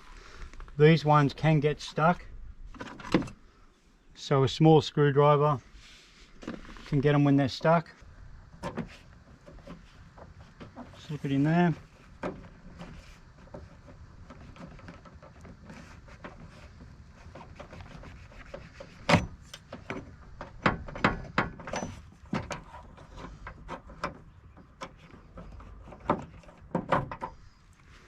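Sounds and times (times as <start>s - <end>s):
sharp clicks and knocks: 8.6s - 27.4s
hand tool scraping: 8.7s - 20.2s.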